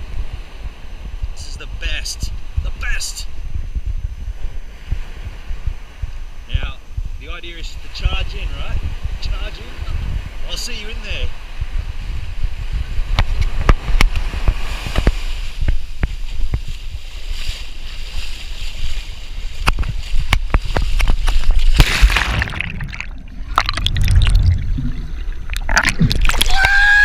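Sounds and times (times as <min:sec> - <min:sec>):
wind and handling on microphone: 0:00.0 - 0:27.0
wave rushing: 0:19.0 - 0:27.0
ocean surf splashing: 0:20.5 - 0:27.0
person crying out: 0:26.3 - 0:27.0.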